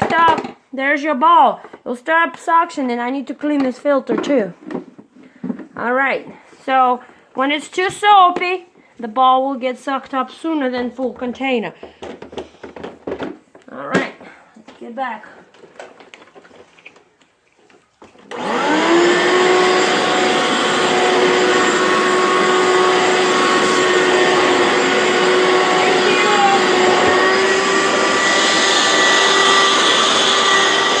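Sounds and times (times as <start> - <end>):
carpet cleaner motor whining: 18.3 - 31.0.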